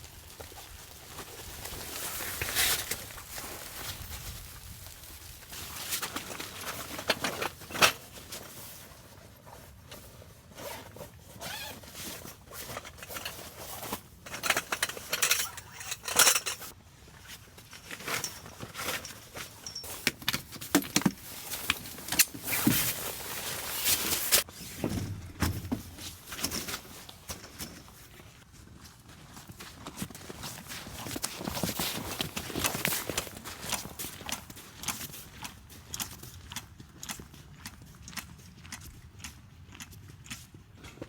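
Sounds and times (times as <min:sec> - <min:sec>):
camping gear rustling: 0:00.0 - 0:35.1
zipper pulls: 0:10.6 - 0:12.7.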